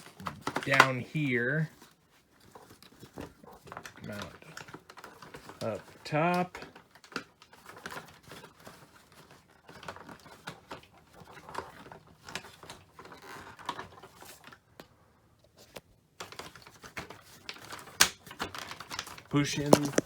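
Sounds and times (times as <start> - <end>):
bag rustling: 0.0 - 14.6, 18.7 - 20.0
plastic clicks and taps: 19.6 - 20.0.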